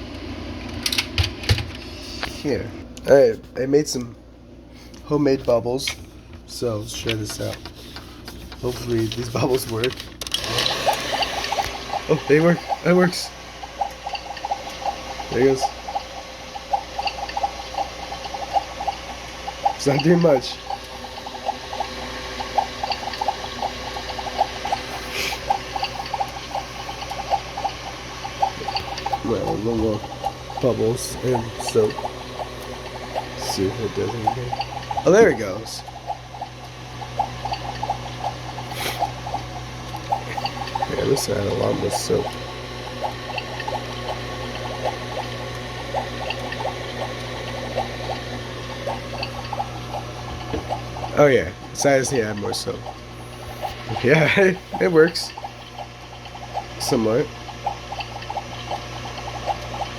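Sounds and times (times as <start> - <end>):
faint pump hum: 0.0 - 59.9
water bubbling and gurgling: 10.7 - 59.9.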